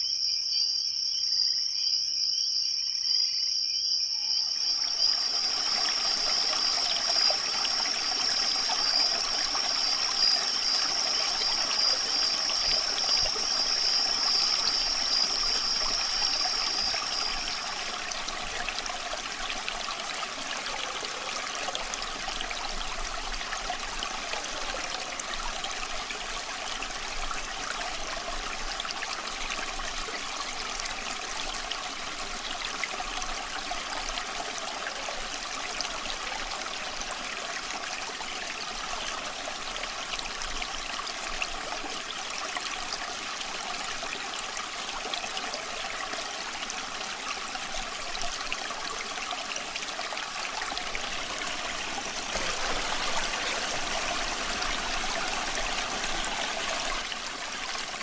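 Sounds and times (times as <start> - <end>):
crickets trilling: 0.0 - 29.0, 50.4 - 57.1
small stream trickling: 4.0 - 58.0.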